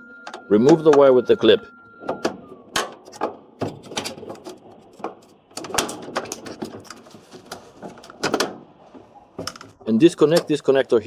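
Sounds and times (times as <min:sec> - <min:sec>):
plastic clicking and rattling: 0:02.0 - 0:10.8
plastic scrape or clatter: 0:02.8 - 0:09.9.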